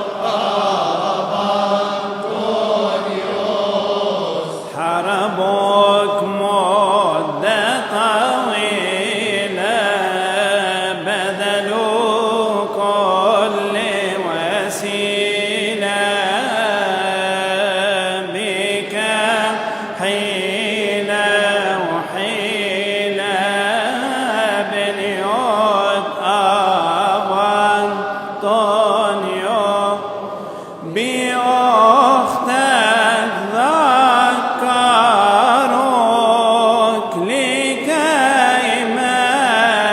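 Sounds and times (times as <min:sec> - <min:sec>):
man chanting a hymn: 0:00.0 - 0:39.9.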